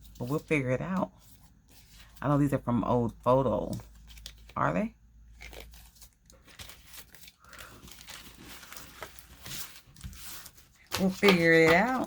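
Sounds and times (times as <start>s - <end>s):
paper and plastic rustling: 5.3s - 12.0s.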